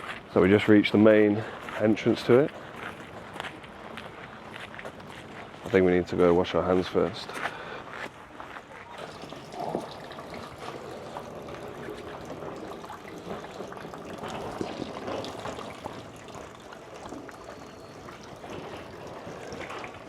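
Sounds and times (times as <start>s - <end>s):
water trickling into stone basin: 9.0s - 20.0s.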